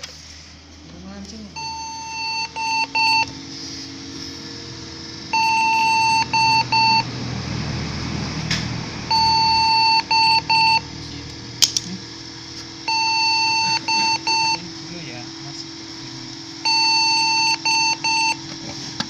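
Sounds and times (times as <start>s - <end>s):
computer beep code: 1.6s - 3.3s, 5.3s - 7.1s, 9.1s - 10.8s, 12.9s - 14.6s, 16.6s - 18.4s.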